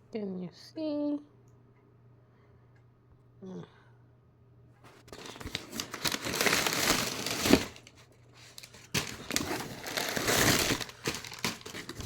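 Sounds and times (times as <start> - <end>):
packaging wrap crinkling: 5.1 - 12.0.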